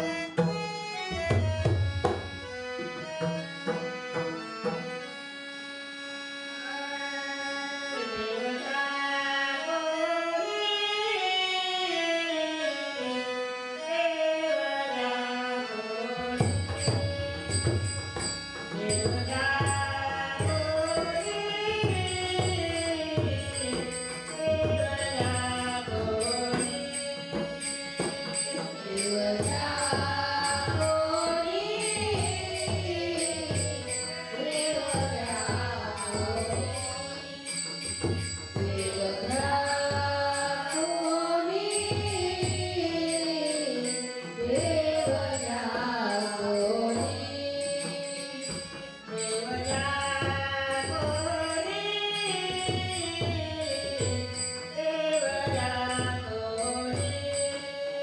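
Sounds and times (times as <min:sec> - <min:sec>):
woman singing devotional song: 0:00.0 - 0:58.0
small hand cymbals: 0:16.6 - 0:58.0.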